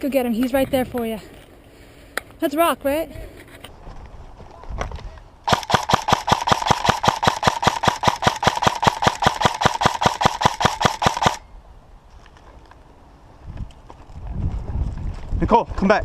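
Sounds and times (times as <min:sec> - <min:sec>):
airsoft rifle full-auto firing: 0:05.5 - 0:11.4.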